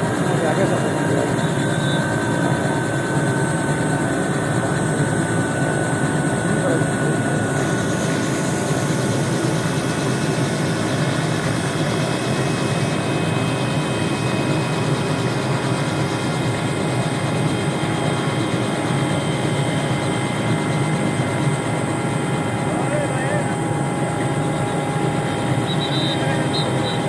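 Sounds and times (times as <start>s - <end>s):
high-pitched whine: 0.0s - 11.7s, 24.1s - 27.0s
helicopter rotor and engine: 0.0s - 27.0s.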